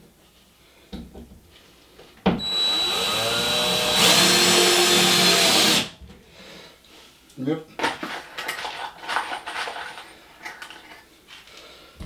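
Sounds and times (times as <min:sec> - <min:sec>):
power drill driving screw into wood: 0:02.4 - 0:06.0.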